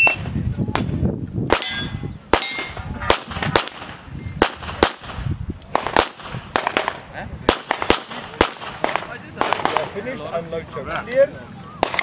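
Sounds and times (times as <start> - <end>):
pistol shots: 1.5 - 9.9
steel targets ringing clang: 1.6 - 2.9.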